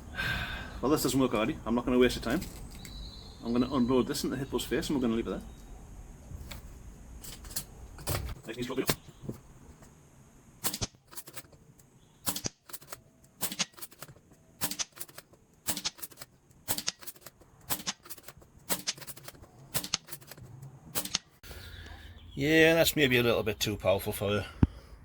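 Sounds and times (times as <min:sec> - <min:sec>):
air rifle shots cracking: 0:14.6 - 0:20.1.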